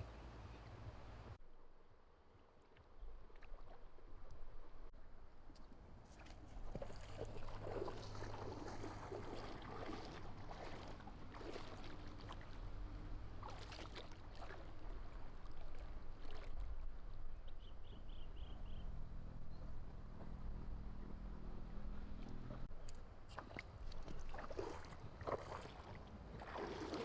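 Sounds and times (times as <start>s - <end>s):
water splashing: 6.7s - 16.7s, 23.3s - 27.0s.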